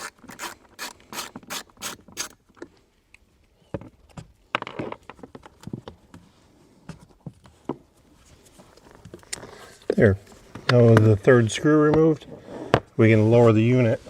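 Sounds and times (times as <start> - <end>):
ratchet clicking: 0.0 - 2.4.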